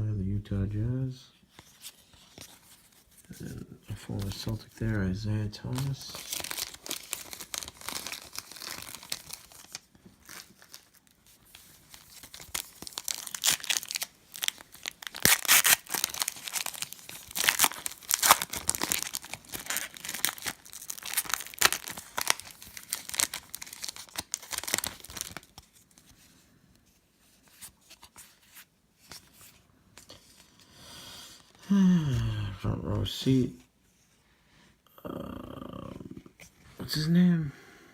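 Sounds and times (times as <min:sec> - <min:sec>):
wrapper tearing and crinkling: 0:05.6 - 0:25.9.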